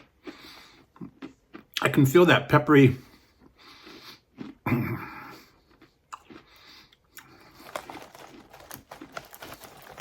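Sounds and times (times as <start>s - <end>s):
person chewing crunchy chips: 0.0s - 2.1s, 3.0s - 10.0s.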